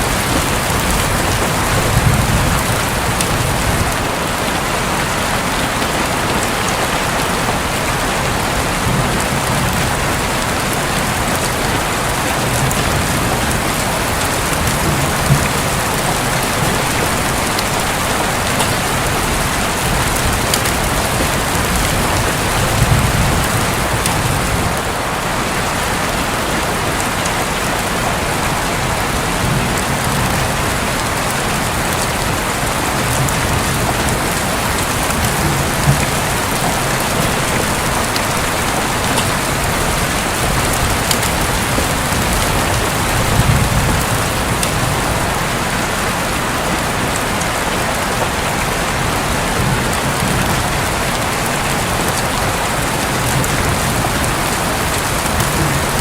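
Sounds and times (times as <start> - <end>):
distant thunder rumbling: 0.0 - 5.5, 8.4 - 25.0
heavy rain on a roof: 0.0 - 56.0.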